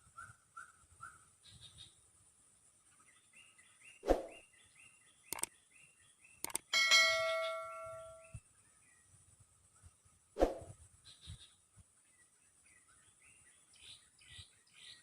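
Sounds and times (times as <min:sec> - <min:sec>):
bird chirps: 0:00.0 - 0:02.0, 0:02.8 - 0:15.0
sharp clicks: 0:05.3 - 0:05.5, 0:06.4 - 0:06.7
metallic ding: 0:06.8 - 0:08.3.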